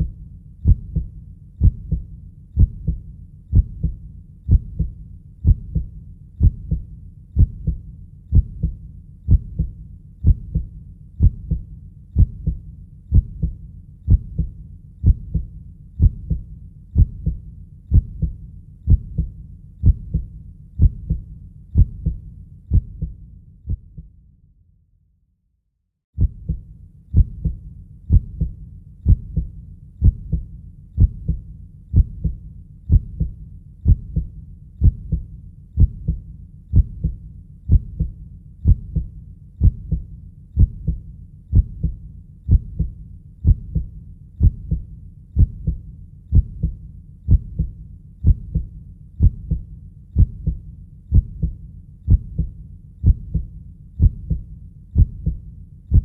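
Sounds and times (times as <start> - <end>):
heartbeat thumping: 0.0 - 24.1, 26.2 - 56.0.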